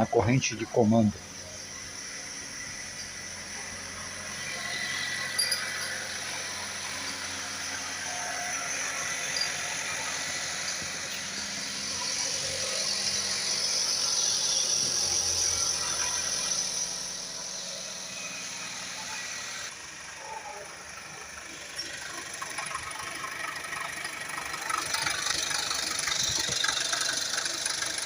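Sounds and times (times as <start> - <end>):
car engine running: 0.0 - 28.0
timing chain noise: 2.5 - 7.6, 9.0 - 11.4, 21.7 - 28.0.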